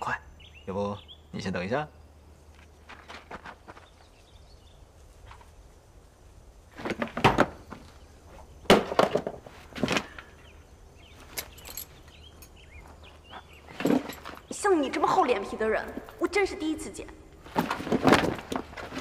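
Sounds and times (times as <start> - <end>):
knocks and thumps: 6.8 - 8.0, 8.6 - 10.2, 17.4 - 19.0.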